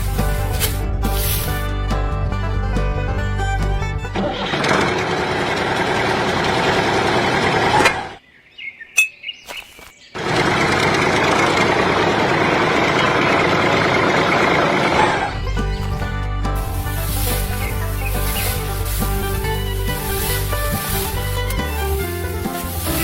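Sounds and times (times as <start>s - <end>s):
bird chirping: 8.2s - 10.2s, 17.3s - 18.8s.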